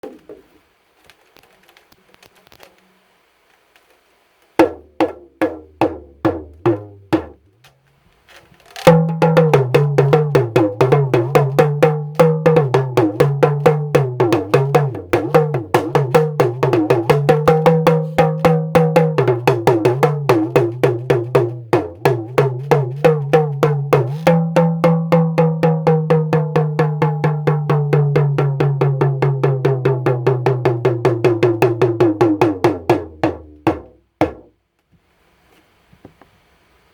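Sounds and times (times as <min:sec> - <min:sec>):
talking drum struck with stick: 0:04.6 - 0:07.4, 0:08.9 - 0:34.5.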